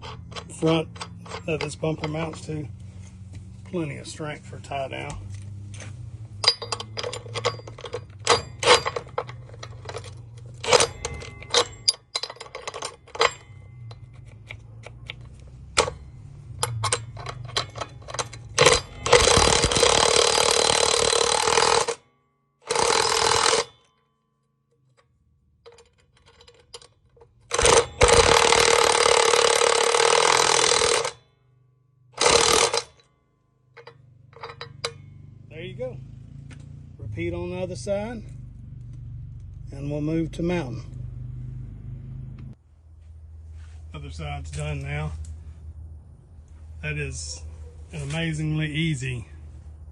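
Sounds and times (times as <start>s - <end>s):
impact wrench running: 0.0s - 3.3s, 4.7s - 22.0s, 22.6s - 23.8s, 25.7s - 31.2s, 32.2s - 33.1s, 33.8s - 37.0s
metal hardware clinking: 0.0s - 3.8s, 4.7s - 22.0s, 24.7s - 31.3s, 32.2s - 36.8s.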